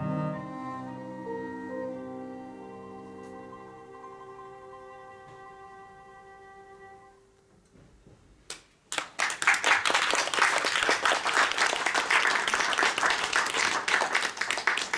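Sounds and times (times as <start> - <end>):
audience applause: 8.9 - 14.9.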